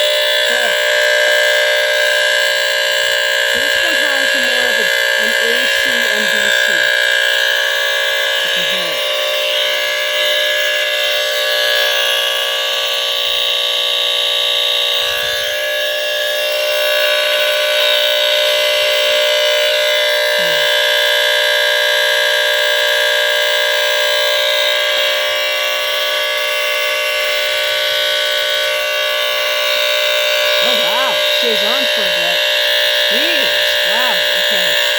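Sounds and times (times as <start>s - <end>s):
smoke alarm horn sounding: 0.0s - 34.9s.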